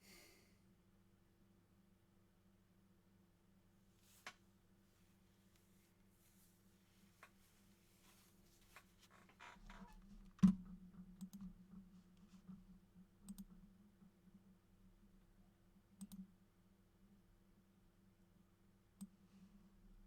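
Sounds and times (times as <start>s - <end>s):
sharp clicks: 16.0s - 16.2s.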